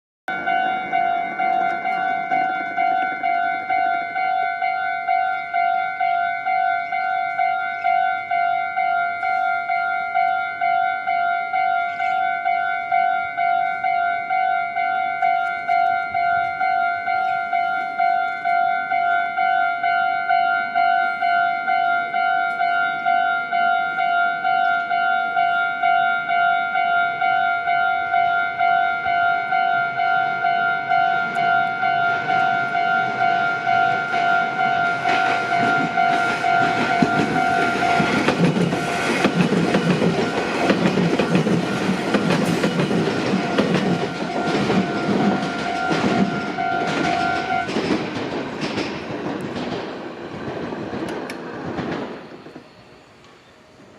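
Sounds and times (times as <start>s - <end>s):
level-crossing bell dinging: 0.3s - 48.1s
train wheels clattering: 29.3s - 52.7s.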